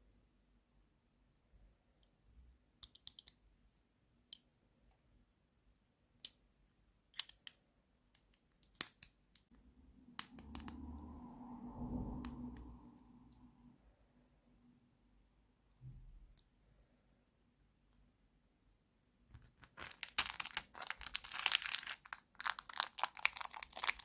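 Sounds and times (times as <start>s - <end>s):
plastic toy pieces clicking: 2.8s - 3.4s.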